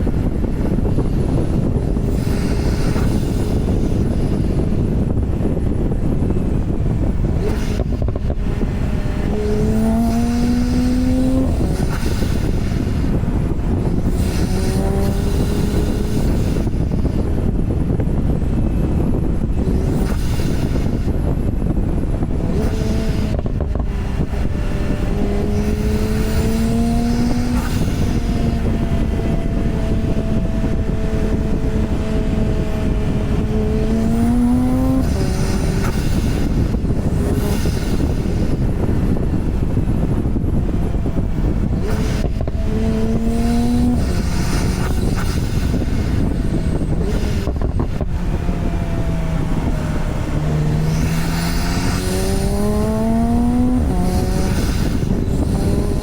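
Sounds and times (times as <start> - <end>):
car engine pulling under load: 0.0 - 56.0
road and wind noise: 0.0 - 56.0.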